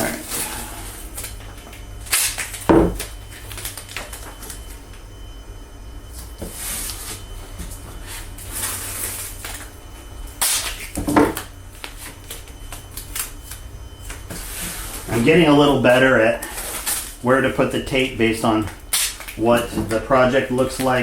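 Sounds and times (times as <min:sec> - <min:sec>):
low steady hum: 0:00.0 - 0:21.0
handling knocks: 0:02.7 - 0:03.0.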